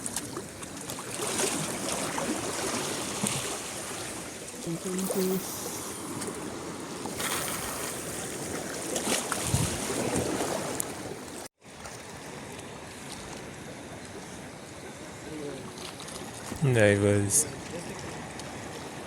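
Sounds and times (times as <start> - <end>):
sea water washing at shore: 0.0 - 19.0
wind buffeting microphone: 9.4 - 10.4.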